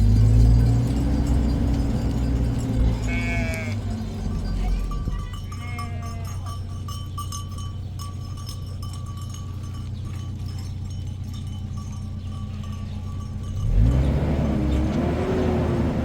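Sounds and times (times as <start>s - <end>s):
low steady rumble: 0.0s - 16.0s
sheep bleating: 2.8s - 6.6s
clinks and taps: 5.6s - 14.0s.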